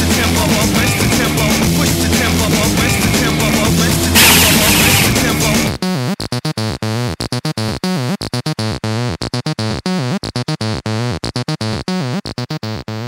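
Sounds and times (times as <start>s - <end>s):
stuttering synthesizer music: 4.2s - 6.0s.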